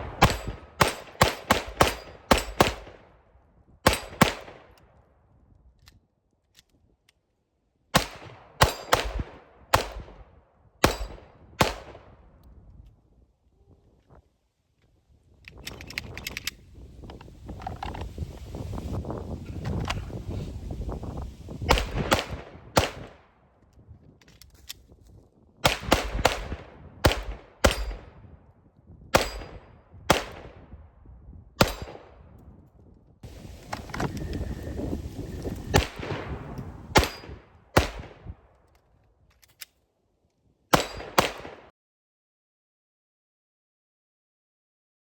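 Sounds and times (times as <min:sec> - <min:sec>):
pistol shots: 0:00.0 - 0:03.0, 0:03.8 - 0:04.7, 0:07.9 - 0:10.2, 0:10.8 - 0:12.0, 0:21.7 - 0:23.1, 0:25.6 - 0:28.1, 0:29.2 - 0:30.6, 0:31.6 - 0:32.1, 0:36.9 - 0:38.2, 0:40.7 - 0:41.7.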